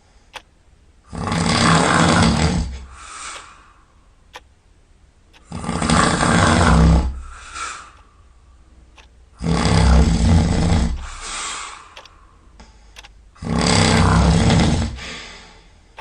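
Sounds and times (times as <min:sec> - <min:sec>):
loud snoring: 0:01.1 - 0:02.9, 0:05.4 - 0:07.8, 0:09.4 - 0:11.6, 0:13.4 - 0:15.5.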